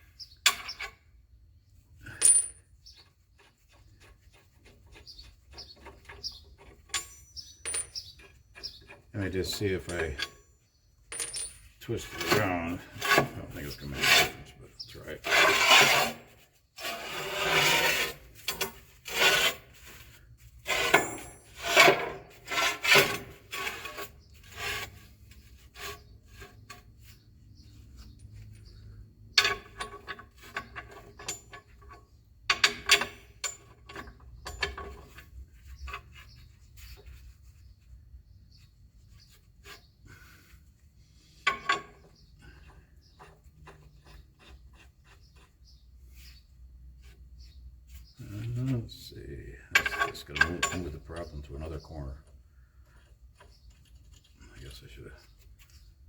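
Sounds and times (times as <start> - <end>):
metal plate scraping: 11.1 - 27.2.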